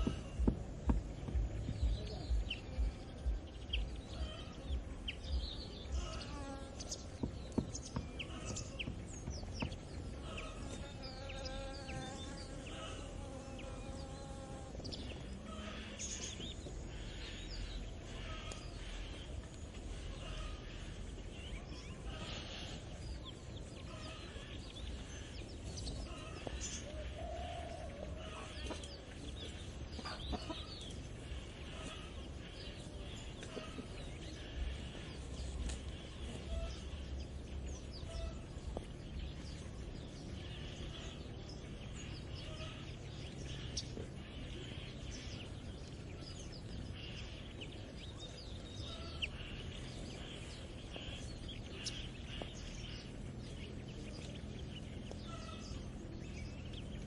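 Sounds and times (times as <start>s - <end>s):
small birds chirping: 0.0s - 57.0s
chickens clucking: 25.6s - 36.9s.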